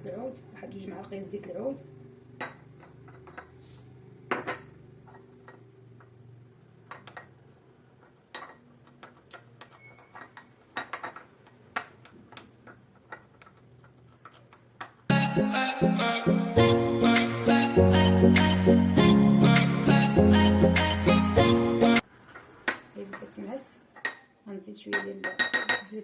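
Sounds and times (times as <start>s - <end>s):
acoustic guitar music: 15.1s - 22.0s
spoon clinking against pot: 24.9s - 26.0s.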